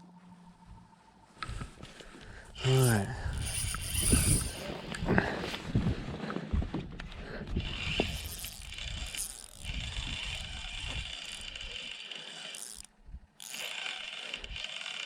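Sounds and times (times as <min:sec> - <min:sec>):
fishing reel whirring clicking: 0:02.6 - 0:04.7, 0:07.7 - 0:15.0.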